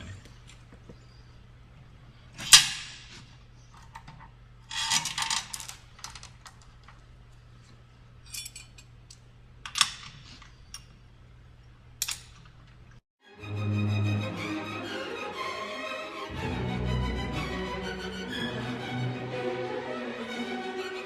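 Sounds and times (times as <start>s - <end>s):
metal chain clinking and rattling: 8.2s - 8.9s.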